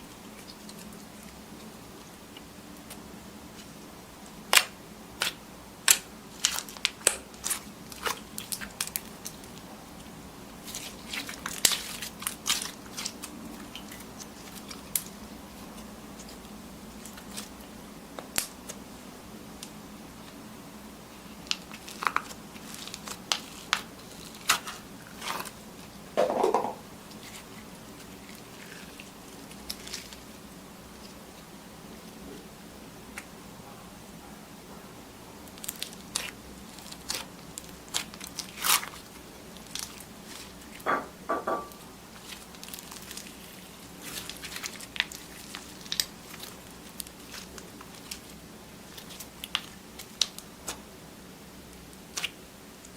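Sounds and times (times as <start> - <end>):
slime squeezed crackling: 35.5 - 40.8, 42.2 - 50.8.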